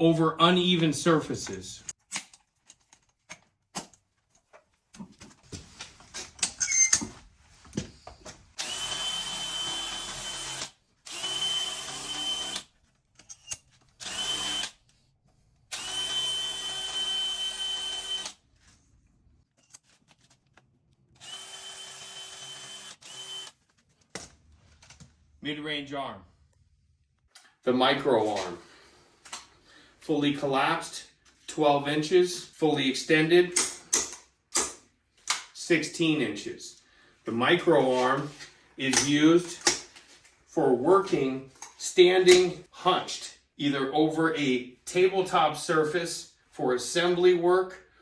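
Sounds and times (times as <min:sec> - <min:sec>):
power drill whining: 0:08.6 - 0:12.7, 0:13.3 - 0:14.8, 0:15.7 - 0:18.4, 0:21.2 - 0:23.6.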